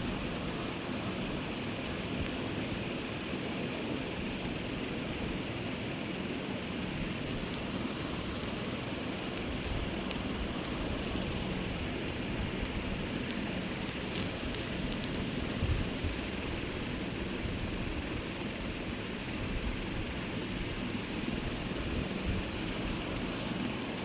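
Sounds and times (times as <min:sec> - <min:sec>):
faint ticks: 0:07.3 - 0:16.6.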